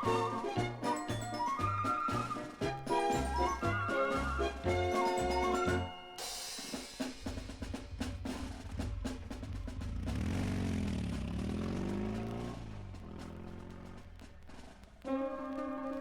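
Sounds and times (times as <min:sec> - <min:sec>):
orchestral march melody: 0:00.0 - 0:10.4, 0:12.2 - 0:16.0
snare drum roll: 0:00.0 - 0:16.0
low bass drum: 0:07.3 - 0:13.5.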